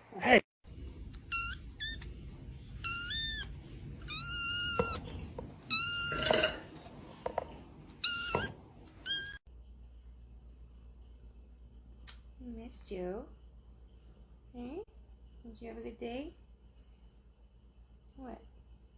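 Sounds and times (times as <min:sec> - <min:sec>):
cat meowing: 0:02.8 - 0:05.0.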